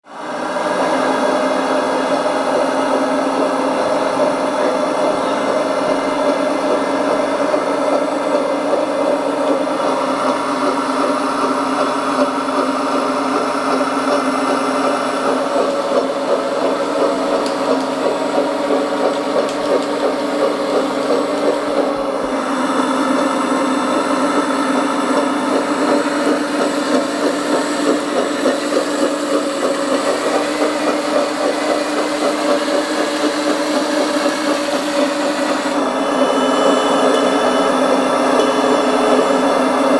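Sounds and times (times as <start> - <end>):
model bulldozer motors whining: 0.1 - 39.9.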